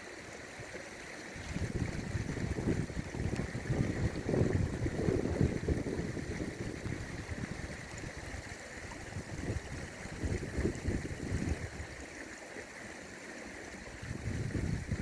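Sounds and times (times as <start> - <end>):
wind buffeting microphone: 1.4 - 11.9, 13.9 - 15.0.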